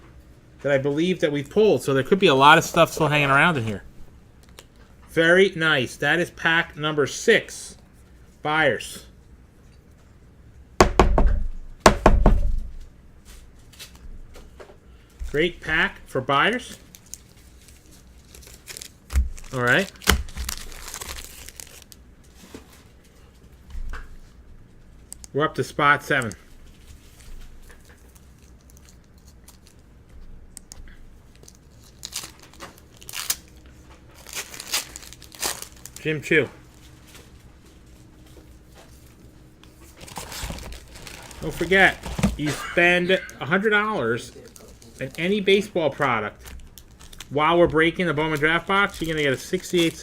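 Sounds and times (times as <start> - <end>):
sharp knocks and thuds: 10.8 - 12.8
foil wrapper tearing and crinkling: 16.7 - 22.5, 26.8 - 29.9, 31.2 - 36.1, 39.8 - 42.7, 44.1 - 47.4, 48.2 - 50.0.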